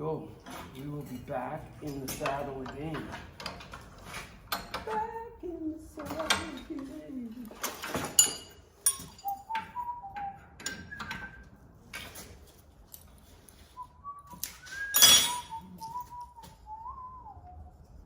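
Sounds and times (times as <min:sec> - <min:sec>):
man whistling a tune: 0:08.9 - 0:11.5, 0:13.7 - 0:17.9.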